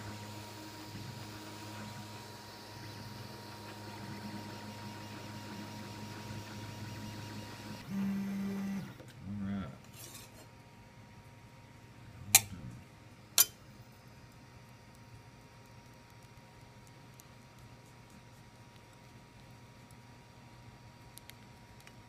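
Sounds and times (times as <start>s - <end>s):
printer motor hum: 0.0s - 9.1s.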